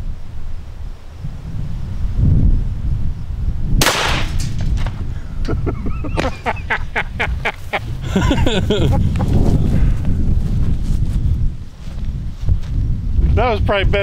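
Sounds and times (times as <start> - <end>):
wind rumbling on microphone: 0.0 - 14.0
shotgun shot: 3.8 - 4.9
person laughing: 5.3 - 9.8.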